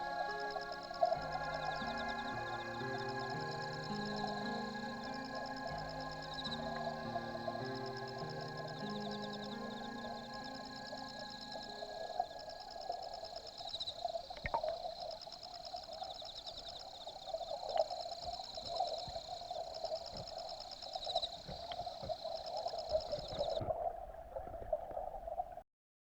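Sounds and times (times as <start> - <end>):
high pulsing chirping: 0.0 - 14.4
stream water rushing underwater: 0.0 - 25.6.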